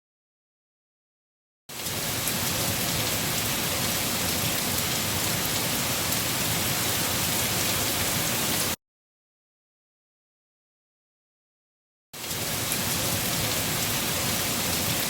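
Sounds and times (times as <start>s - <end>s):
raindrops ticking on surfaces: 1.7s - 8.8s, 12.2s - 15.0s
steady rain hiss: 1.7s - 8.8s, 12.2s - 15.0s.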